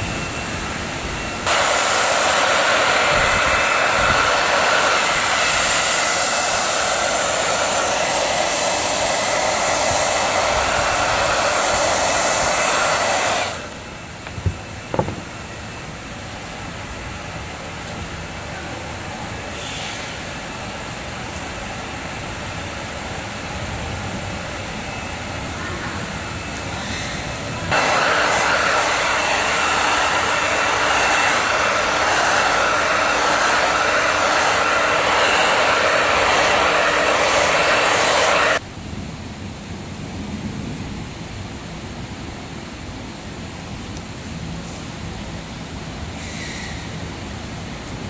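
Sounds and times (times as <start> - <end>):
small electric blower motor: 0.0 - 15.4, 25.7 - 38.6.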